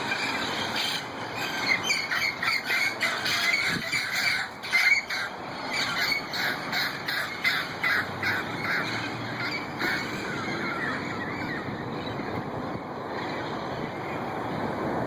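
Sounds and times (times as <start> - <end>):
parrots squawking: 0.0 - 11.7.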